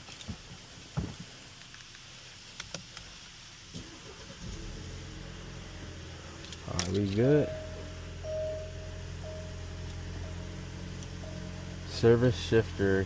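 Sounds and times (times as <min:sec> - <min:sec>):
car engine idling: 0:03.8 - 0:13.0.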